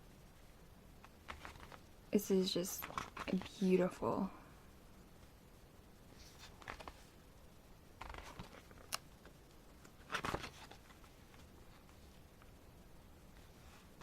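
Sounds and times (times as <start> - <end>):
paper pages rustling: 1.0 - 1.9, 2.8 - 3.5, 6.2 - 7.1, 8.0 - 12.5.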